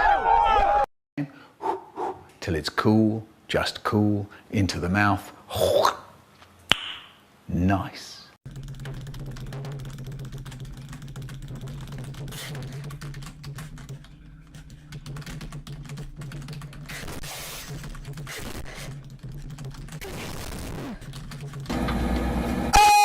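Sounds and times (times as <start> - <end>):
computer keyboard typing: 8.5 - 20.0, 20.8 - 21.7.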